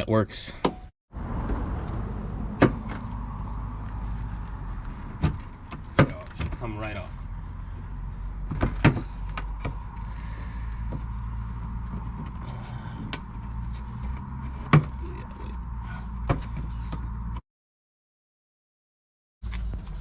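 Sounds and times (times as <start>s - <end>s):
plastic knocks and clatters: 8.4s - 9.8s.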